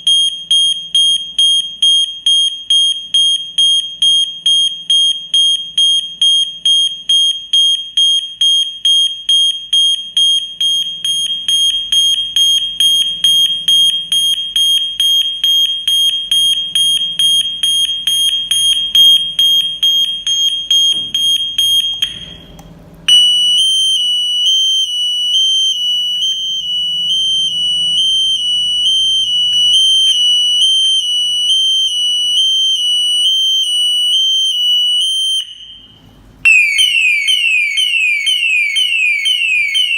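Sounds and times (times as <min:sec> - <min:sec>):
electronic siren beeping: 0:23.1 - 0:35.8, 0:36.5 - 0:39.9.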